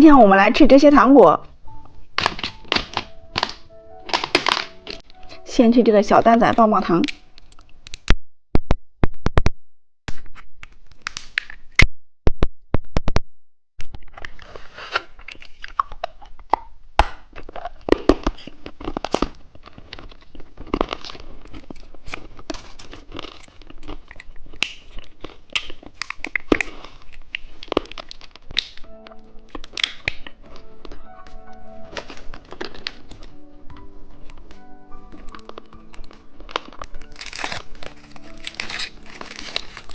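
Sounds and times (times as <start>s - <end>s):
plastic candy wrapper tearing: 2.2s - 5.4s, 7.0s - 8.1s, 14.1s - 39.9s
crunching on hard lollipop: 14.9s - 30.7s, 34.9s - 39.9s.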